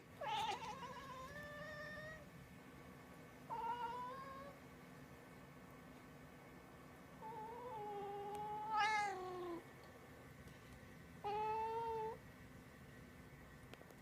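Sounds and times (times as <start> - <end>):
cat meowing: 0.2 - 2.2, 7.2 - 9.6.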